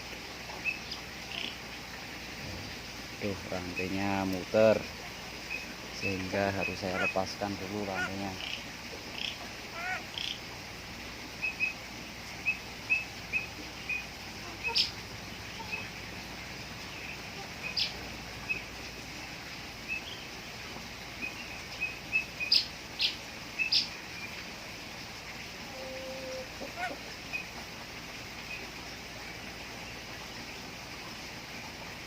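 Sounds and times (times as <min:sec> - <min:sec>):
sharp bird calls: 0:12.4 - 0:15.9.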